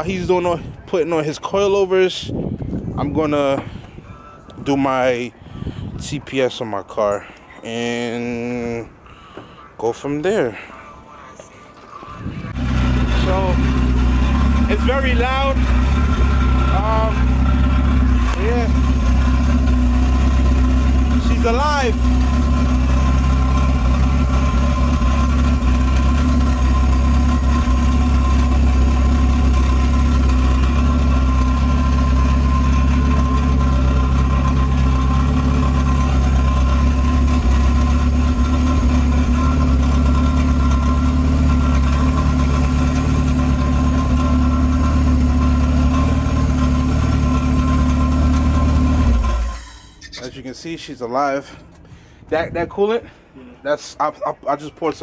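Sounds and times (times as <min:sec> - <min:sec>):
car engine idling: 0:12.0 - 0:50.2.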